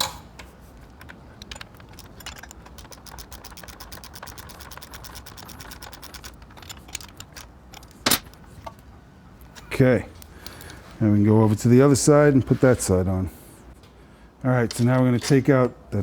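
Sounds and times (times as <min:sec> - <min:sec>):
ratchet wrench clicking: 0:01.0 - 0:08.4.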